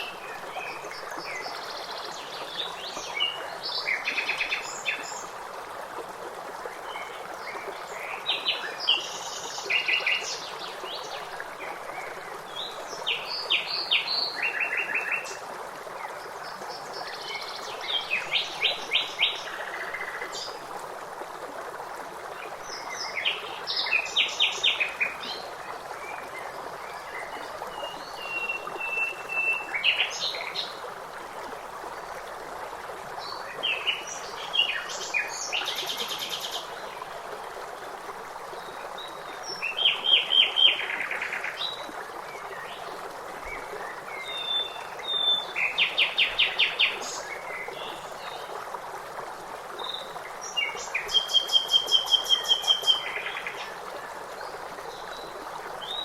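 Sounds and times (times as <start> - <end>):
flowing water: 0.0 - 56.0.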